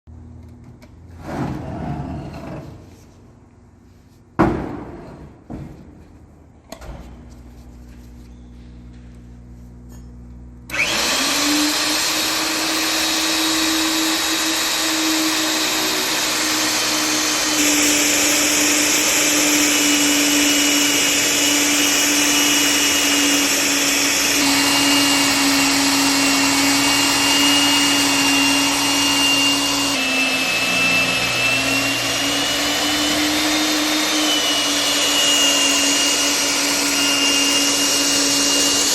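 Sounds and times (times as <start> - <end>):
low electric hum: 0.1 - 10.8
magnetic drill motor whine: 10.7 - 38.9.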